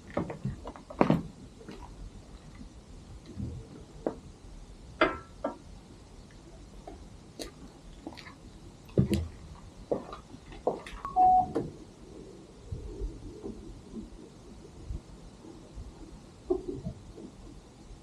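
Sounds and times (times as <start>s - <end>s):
short steady beep: 11.1s - 11.6s.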